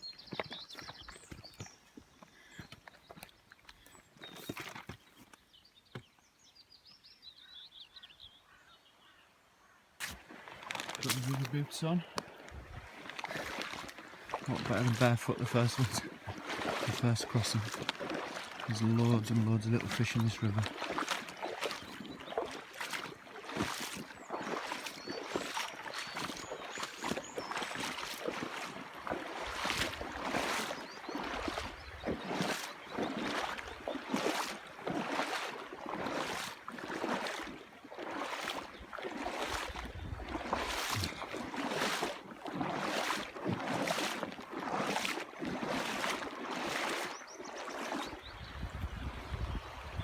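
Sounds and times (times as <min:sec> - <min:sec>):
footsteps splashing through water: 0:00.0 - 0:05.5, 0:10.0 - 0:50.0
wind rumble on microphone: 0:39.7 - 0:41.2, 0:48.2 - 0:50.0.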